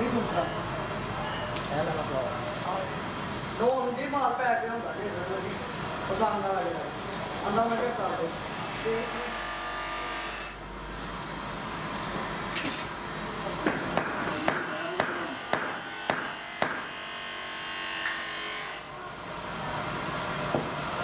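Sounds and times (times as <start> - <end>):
workshop hum: 0.0 - 21.0
hammer striking steel blade: 13.6 - 16.9.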